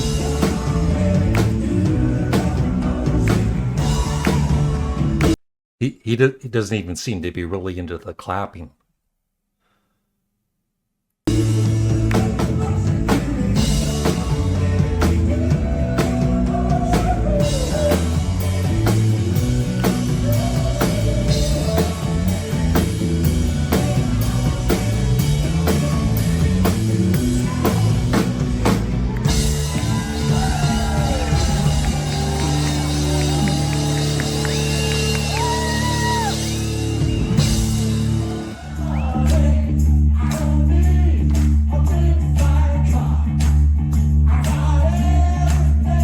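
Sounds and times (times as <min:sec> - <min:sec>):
bass guitar: 0:00.0 - 0:05.4, 0:11.3 - 0:46.0
drum kit: 0:00.0 - 0:05.4, 0:11.3 - 0:45.7
person singing: 0:00.0 - 0:05.4, 0:11.3 - 0:28.4
electric guitar: 0:11.3 - 0:46.0.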